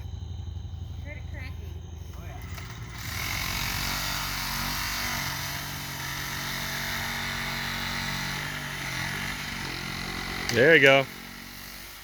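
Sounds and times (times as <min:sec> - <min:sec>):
reciprocating saw cutting wood: 0:02.4 - 0:12.0.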